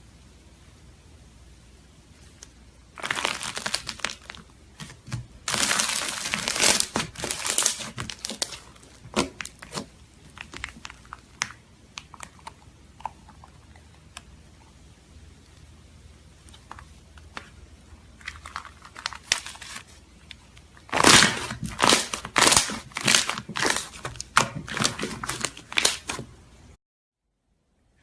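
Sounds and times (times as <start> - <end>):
slime crackling and popping: 3.0 - 13.4, 18.2 - 26.2.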